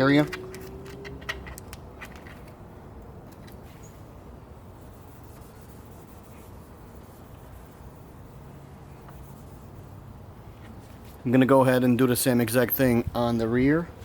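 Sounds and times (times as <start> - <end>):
wipe rubbing on panel: 4.8 - 10.0.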